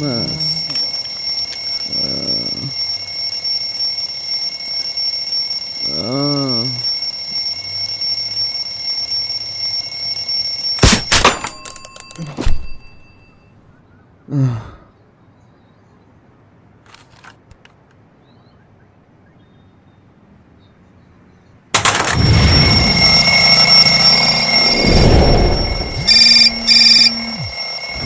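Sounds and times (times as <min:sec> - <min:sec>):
person wordless vocal sounds: 0:00.0 - 0:00.8, 0:01.9 - 0:02.7, 0:05.9 - 0:06.8, 0:14.3 - 0:14.9
electronic alarm high tone: 0:00.0 - 0:13.5, 0:21.8 - 0:28.0.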